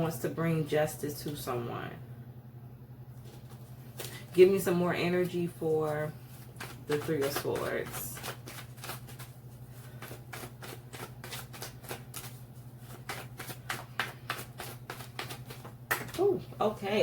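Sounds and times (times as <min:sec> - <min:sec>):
low electrical hum: 0:00.0 - 0:17.0
cards being shuffled: 0:05.2 - 0:16.2.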